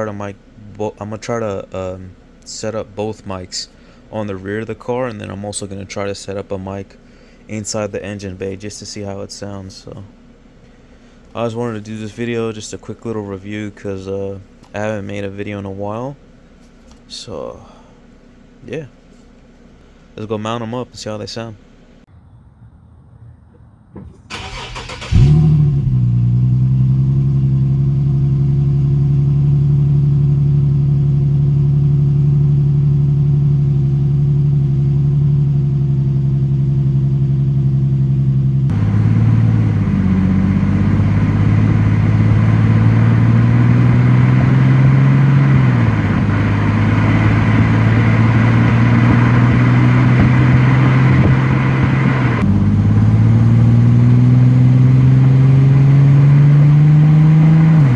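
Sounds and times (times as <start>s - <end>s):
car engine idling: 0.0s - 16.6s, 23.2s - 57.9s
car engine starter cranking: 24.0s - 26.2s.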